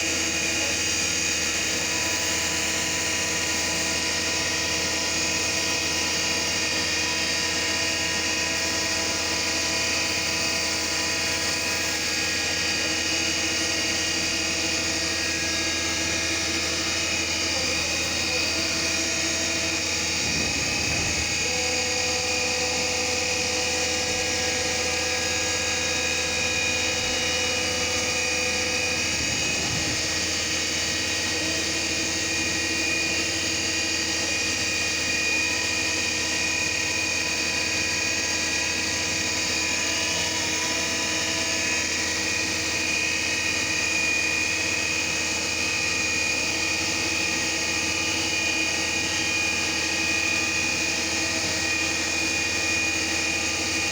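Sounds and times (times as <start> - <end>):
milling machine running: 0.0 - 53.9
high whining tones: 18.0 - 23.4, 24.2 - 32.2.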